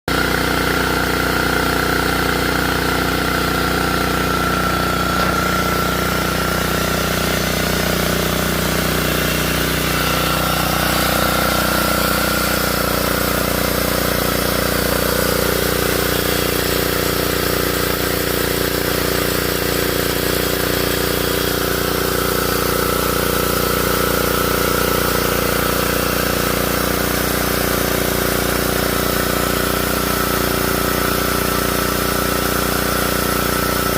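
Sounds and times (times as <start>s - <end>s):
engine running: 0.1s - 33.9s.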